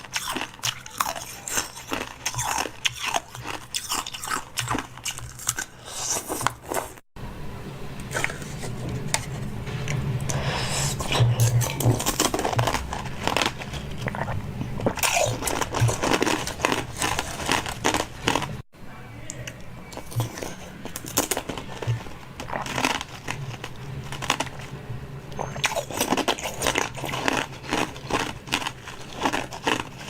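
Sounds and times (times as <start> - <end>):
crunching and chewing food: 0.0 - 7.1, 8.0 - 30.0
low steady hum: 6.7 - 30.0.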